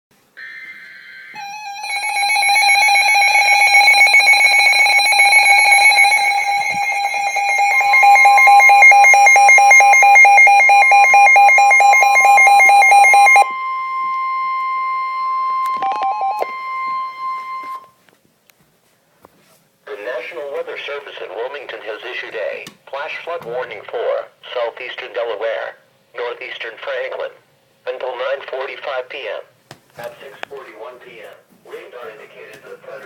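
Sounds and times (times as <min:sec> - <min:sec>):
electronic alarm tone: 0:00.4 - 0:18.0.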